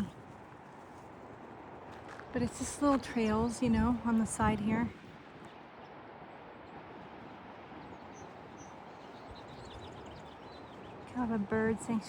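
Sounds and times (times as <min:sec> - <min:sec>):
wind noise on microphone: 0:00.0 - 0:12.0.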